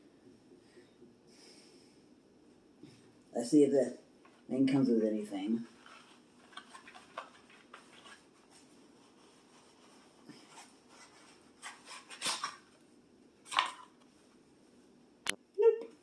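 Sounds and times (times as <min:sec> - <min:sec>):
rustles and small clicks: 0:05.7 - 0:08.7.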